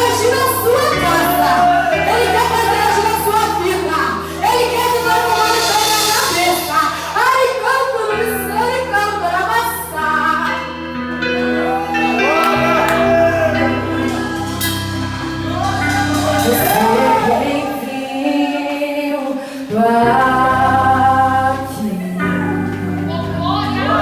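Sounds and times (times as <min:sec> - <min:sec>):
bass and keyboard chords: 0:00.0 - 0:17.9, 0:19.8 - 0:24.0
person singing melody: 0:09.2 - 0:24.0.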